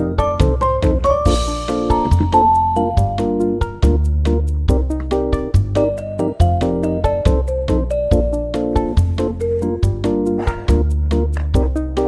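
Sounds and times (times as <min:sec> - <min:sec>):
upbeat instrumental music: 0:00.0 - 0:12.0.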